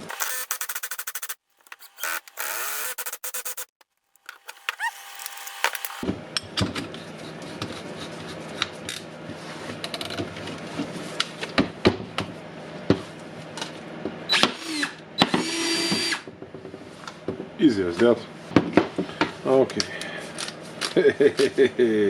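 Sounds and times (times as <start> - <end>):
drill motor spinning up: 0.0 - 6.0
metal tools clicking on drill chuck: 0.0 - 6.0.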